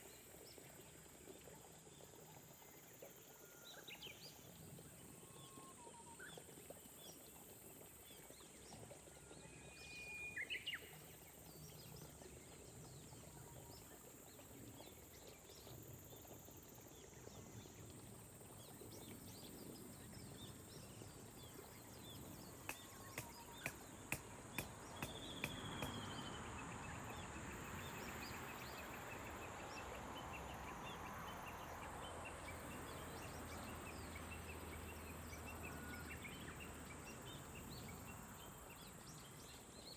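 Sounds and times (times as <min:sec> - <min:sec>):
soft rain: 0:00.0 - 0:39.5
sharp clicks: 0:22.6 - 0:26.1.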